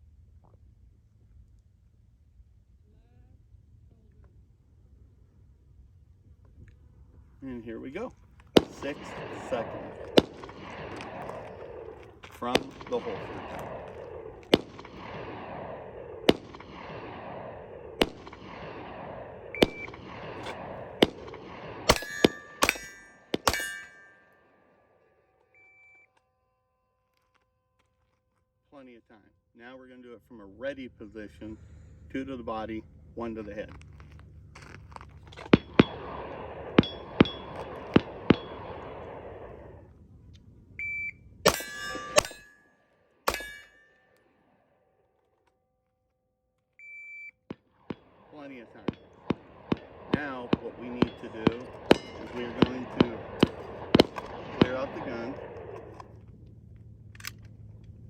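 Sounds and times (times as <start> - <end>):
sharp gunshot reports: 8.6 - 24.1, 35.4 - 39.8, 43.3 - 43.7, 47.8 - 56.2
pistol shot: 8.6 - 24.2, 35.4 - 39.8, 41.5 - 42.5, 43.3 - 43.8, 47.5 - 56.2
shot timer beep: 19.5 - 20.0, 40.8 - 42.4, 46.8 - 47.4
steel target ringing: 19.5 - 24.7, 35.5 - 38.9, 41.5 - 44.2, 48.8 - 55.3
handgun shots: 19.6 - 24.1, 41.5 - 42.5, 43.3 - 43.8.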